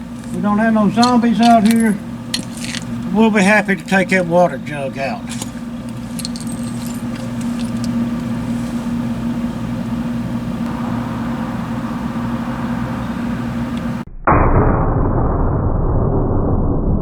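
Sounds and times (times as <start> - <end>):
faint low hum: 0.0 - 13.9
slow motion pistol shot boom: 14.1 - 17.0.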